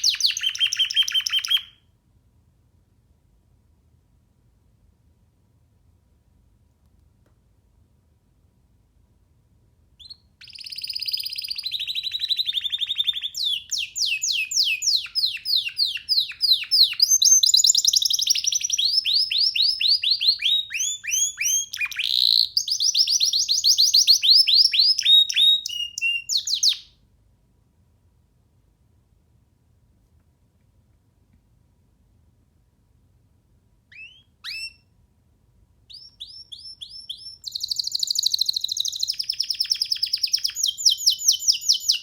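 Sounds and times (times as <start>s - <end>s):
canary singing trills: 0.0s - 1.8s, 10.0s - 26.9s, 33.9s - 34.9s, 35.9s - 42.0s.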